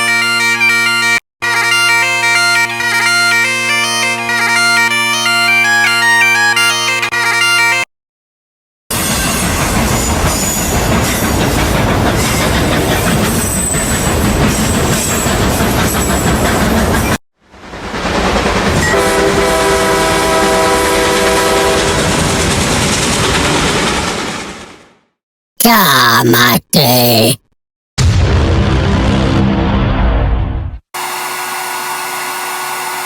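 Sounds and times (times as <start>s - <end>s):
train rumbling on rails: 8.9s - 25.0s
train horn: 18.8s - 22.1s.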